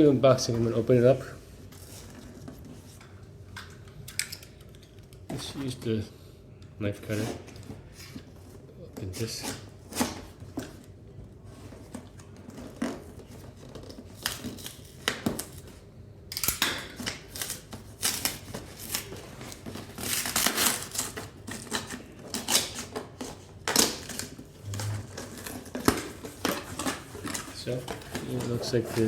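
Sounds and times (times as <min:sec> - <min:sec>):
cardboard and packaging rustling: 0:00.2 - 0:03.2, 0:07.0 - 0:15.9, 0:16.9 - 0:29.0.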